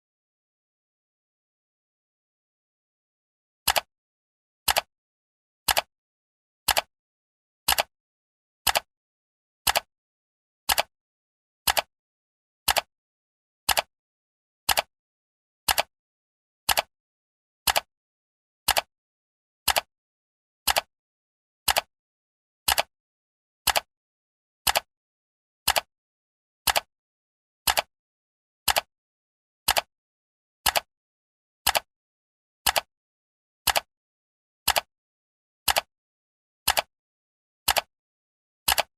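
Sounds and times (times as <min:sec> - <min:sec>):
clock ticking: 0:06.7 - 0:06.9, 0:13.7 - 0:13.9, 0:14.7 - 0:14.9, 0:15.7 - 0:15.9, 0:18.7 - 0:18.9, 0:19.7 - 0:19.9, 0:20.7 - 0:20.9, 0:21.7 - 0:21.9, 0:25.7 - 0:25.9, 0:26.7 - 0:26.9, 0:27.7 - 0:27.9, 0:28.7 - 0:28.9, 0:29.7 - 0:29.9, 0:31.7 - 0:31.9, 0:32.7 - 0:32.9, 0:33.7 - 0:33.9, 0:34.7 - 0:34.9, 0:35.7 - 0:35.9, 0:36.7 - 0:36.9, 0:37.7 - 0:37.9, 0:38.7 - 0:38.9.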